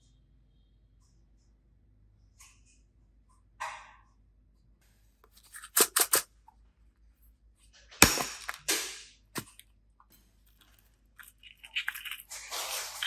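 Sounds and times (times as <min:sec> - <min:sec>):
crunching and cracking handling: 0:08.0 - 0:09.6, 0:10.2 - 0:13.0
sharp crack: 0:08.0 - 0:09.6.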